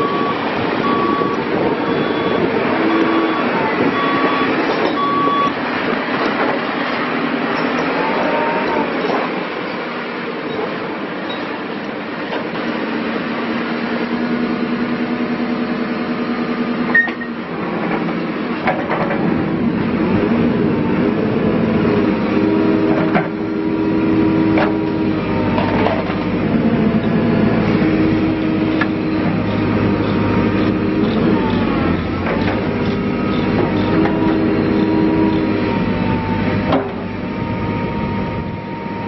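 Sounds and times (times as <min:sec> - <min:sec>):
diesel engine running: 0:00.0 - 0:39.0.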